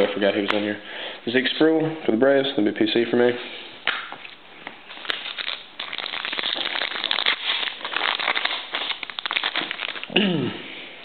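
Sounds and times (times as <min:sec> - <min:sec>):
plastic wrapper crinkling: 0:04.8 - 0:10.2.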